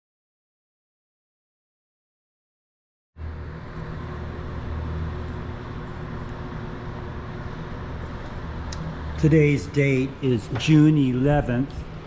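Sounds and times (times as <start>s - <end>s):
steady mechanical hum: 3.2s - 12.0s.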